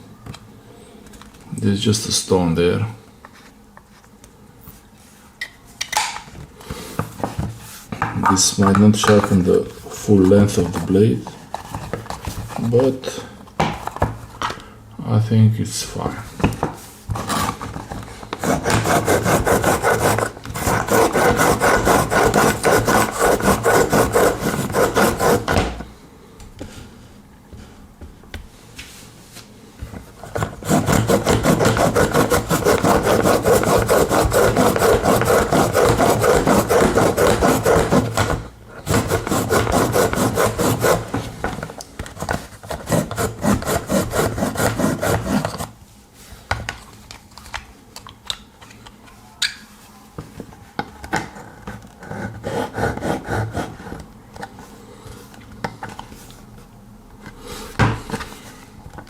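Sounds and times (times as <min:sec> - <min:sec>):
knife grinding in sharpener: 0:18.4 - 0:25.6, 0:30.4 - 0:41.1.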